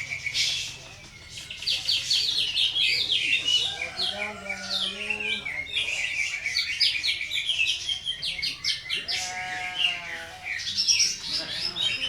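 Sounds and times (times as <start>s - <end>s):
nasal bleat-like bird call: 9.0s - 10.6s.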